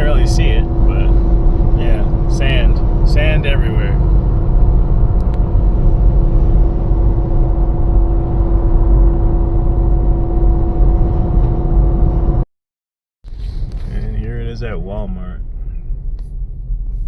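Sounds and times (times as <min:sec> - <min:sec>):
steady droning tone: 0:00.0 - 0:12.4
strong wind buffeting a car: 0:00.0 - 0:12.4, 0:13.3 - 0:17.0.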